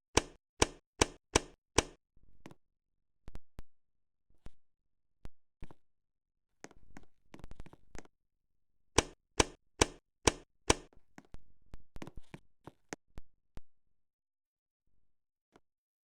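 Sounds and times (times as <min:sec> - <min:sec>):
ceiling fan knocking and clicking: 0:09.0 - 0:10.9.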